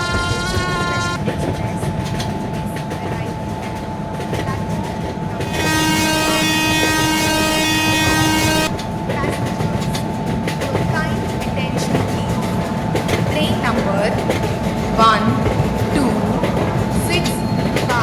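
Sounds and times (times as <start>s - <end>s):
train rumble and rail clatter: 0.0s - 18.0s
locomotive horn blast: 5.4s - 9.9s.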